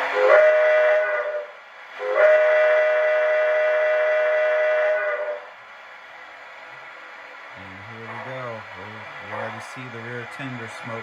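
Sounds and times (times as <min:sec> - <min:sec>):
model locomotive steam whistle: 0:00.0 - 0:05.6.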